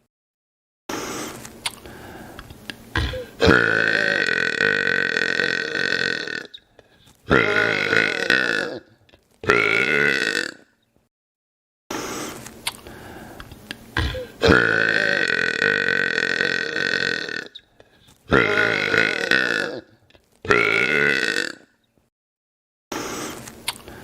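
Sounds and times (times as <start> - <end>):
man burping loudly: 3.0 - 6.6, 7.3 - 10.7, 14.0 - 17.6, 18.3 - 21.7.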